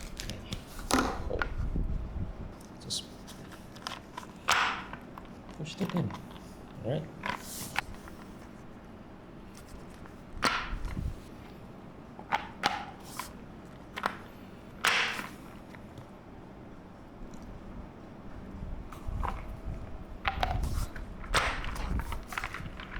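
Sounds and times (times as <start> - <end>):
handling and rubbing: 2.6 - 11.6, 18.5 - 22.9
chair castors knocking and clicking: 3.8 - 6.4, 10.4 - 11.2, 12.2 - 16.0, 19.0 - 22.9.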